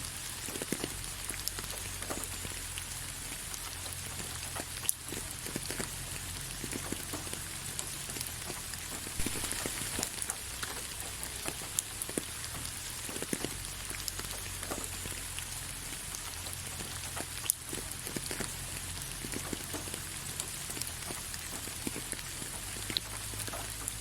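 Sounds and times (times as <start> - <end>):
rain falling on leaves: 0.0 - 24.0.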